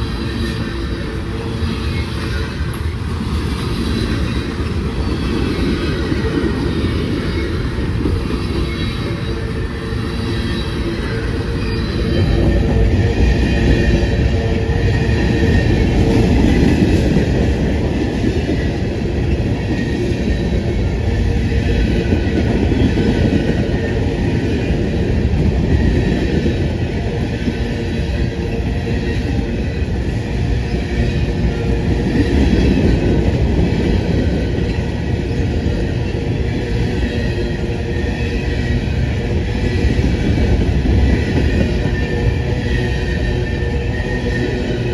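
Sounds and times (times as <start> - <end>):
freight train rolling by: 0.0 - 44.9.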